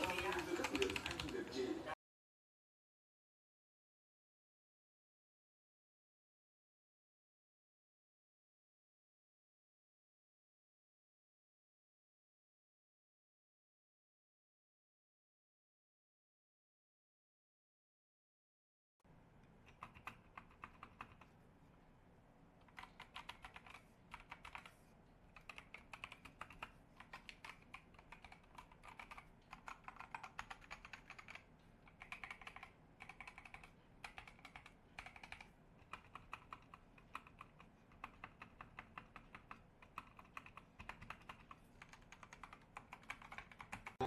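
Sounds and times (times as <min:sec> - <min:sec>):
typing on mechanical keyboard: 0:00.0 - 0:01.4, 0:19.6 - 0:21.3, 0:22.6 - 0:44.0.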